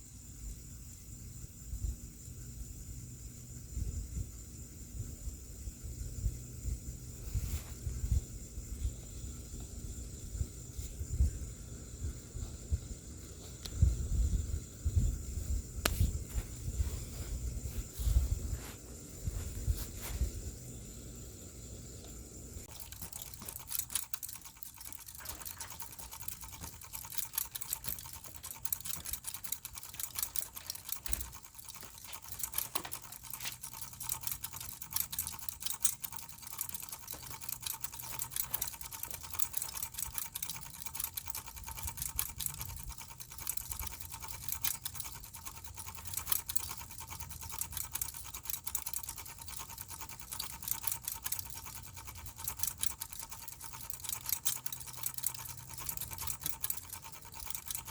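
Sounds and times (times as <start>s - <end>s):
ceiling fan motor hum: 0.0s - 57.9s
fan clicking rattle: 22.0s - 57.9s.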